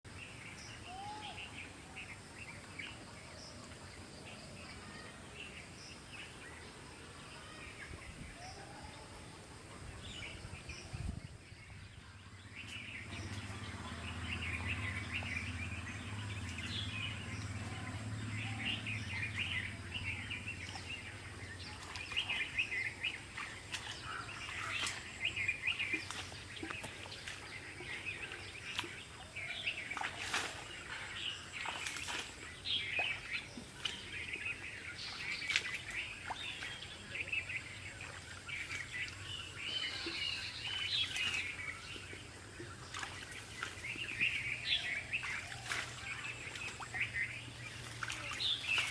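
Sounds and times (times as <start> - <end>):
small birds chirping: 9.8 - 48.9.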